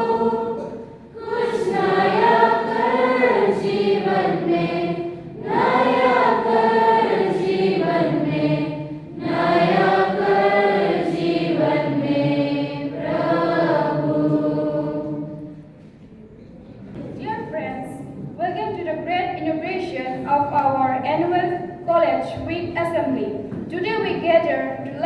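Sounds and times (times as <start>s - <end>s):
choir singing a hymn: 0.0s - 15.7s.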